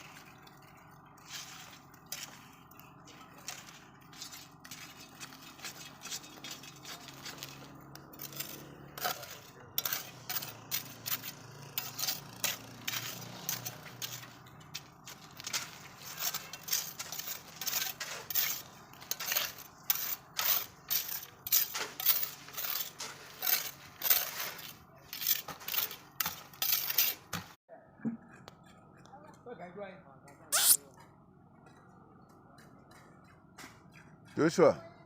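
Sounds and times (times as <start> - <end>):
metal tools clinking and scraping: 0.1 - 27.3.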